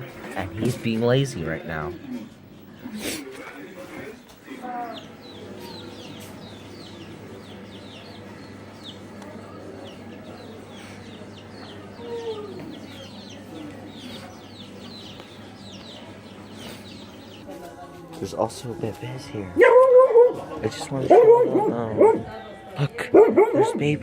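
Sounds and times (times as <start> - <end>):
small birds chirping: 0.0 - 17.6.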